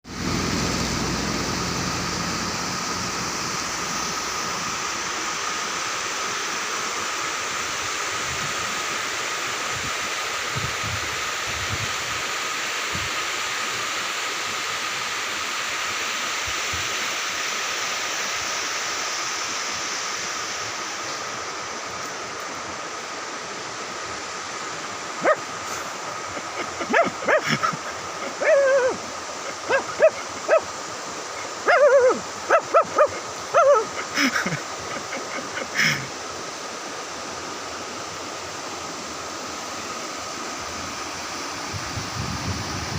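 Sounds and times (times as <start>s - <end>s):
high-pitched hum: 0.0s - 5.4s
dog-like yelping animal calls: 25.2s - 25.4s, 26.8s - 30.7s, 31.6s - 34.0s.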